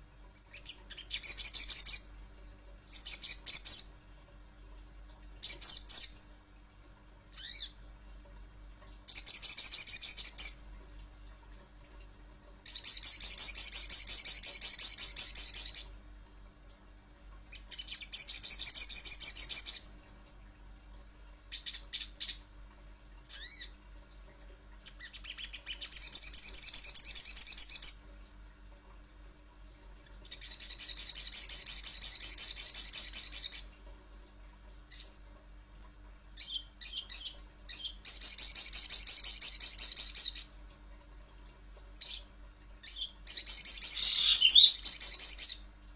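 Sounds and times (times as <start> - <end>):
bird song with rapid trills: 12.7 - 15.9, 42.0 - 45.6.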